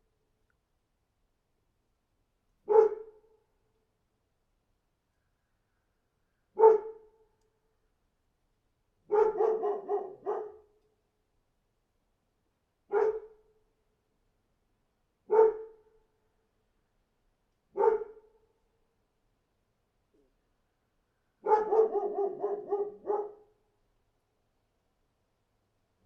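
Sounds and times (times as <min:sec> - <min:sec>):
dog barking: 0:02.7 - 0:03.2, 0:06.6 - 0:07.1, 0:09.1 - 0:10.7, 0:12.9 - 0:13.4, 0:15.3 - 0:15.8, 0:17.8 - 0:18.3, 0:21.4 - 0:23.5.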